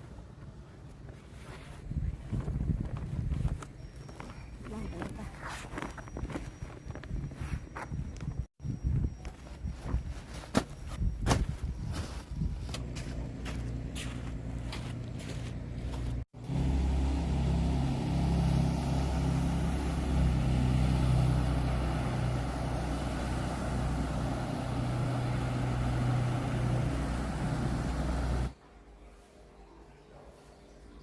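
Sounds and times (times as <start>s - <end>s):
boat engine humming: 12.8s - 28.6s.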